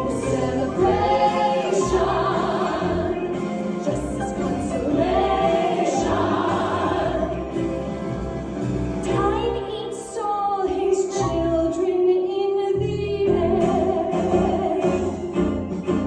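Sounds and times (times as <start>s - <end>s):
choir singing: 0.0s - 8.2s, 13.3s - 15.4s.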